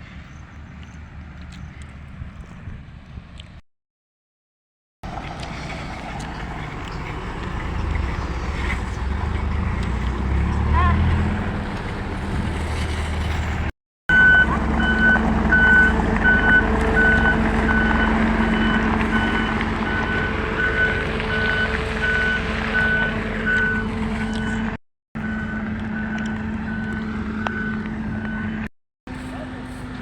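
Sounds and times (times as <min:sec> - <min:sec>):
truck engine running: 0:05.1 - 0:30.0
reversing alarm beeping: 0:14.1 - 0:28.7.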